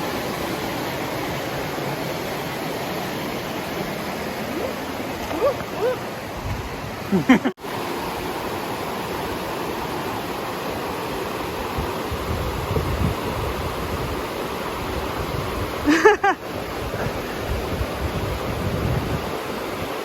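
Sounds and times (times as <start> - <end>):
rushing river water: 0.0 - 20.0.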